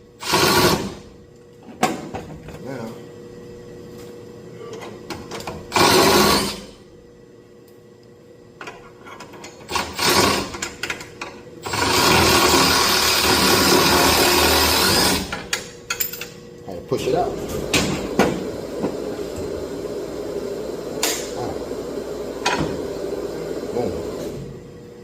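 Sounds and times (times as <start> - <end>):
power drill spinning nut: 5.7 - 6.6, 9.7 - 10.6, 11.6 - 15.4.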